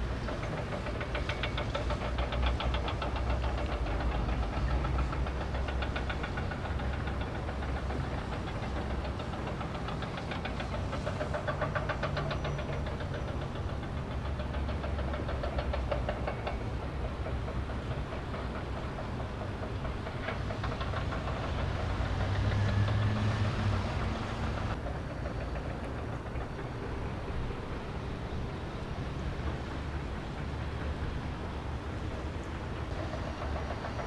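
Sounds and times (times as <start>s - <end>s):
large engine knocking: 0.0s - 34.0s.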